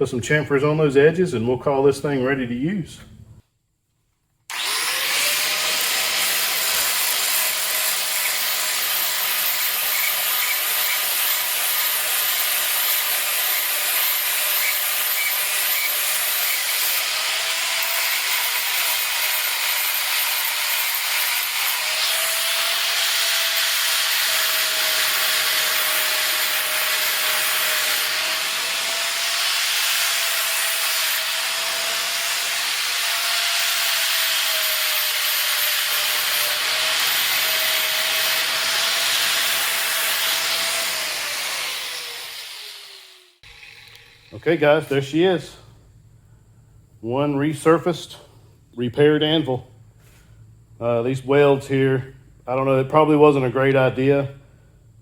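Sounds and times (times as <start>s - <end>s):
power grinder grinding steel: 4.5s - 45.0s.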